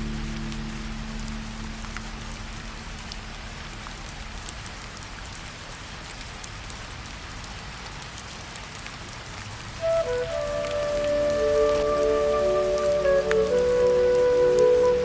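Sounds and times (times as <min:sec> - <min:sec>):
low held music note: 0:00.0 - 0:03.9
steady rain falling: 0:00.0 - 0:15.0.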